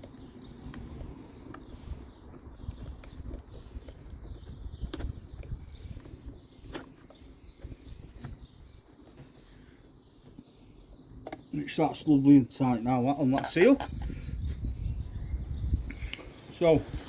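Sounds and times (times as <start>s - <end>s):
hand tool clicking and knocking: 11.2s - 11.6s
sharp clicks: 11.2s - 11.6s.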